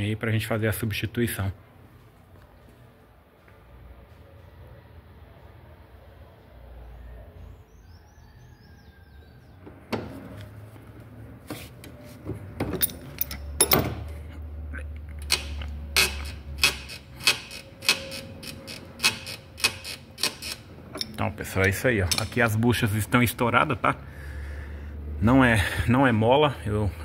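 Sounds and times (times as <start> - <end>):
metal objects clinking: 12.6 - 14.0.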